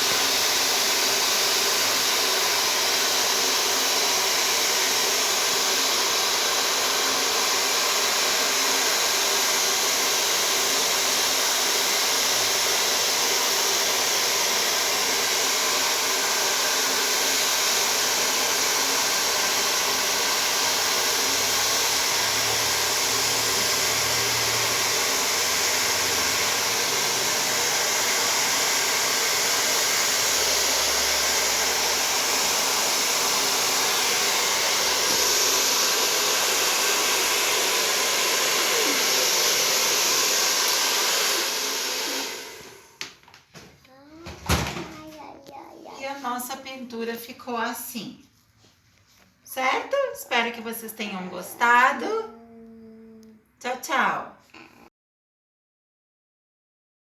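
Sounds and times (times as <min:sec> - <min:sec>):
hair dryer blowing: 0:00.0 - 0:43.2.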